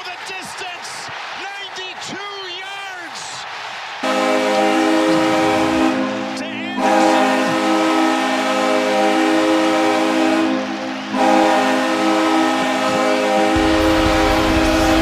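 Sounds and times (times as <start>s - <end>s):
deep multi-note goal horn: 4.0s - 15.0s.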